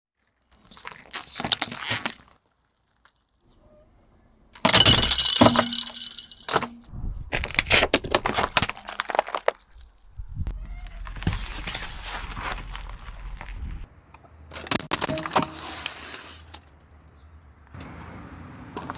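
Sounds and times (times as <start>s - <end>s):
objects crunching under car tyres: 0.2s - 3.4s, 4.6s - 13.9s, 14.5s - 16.8s.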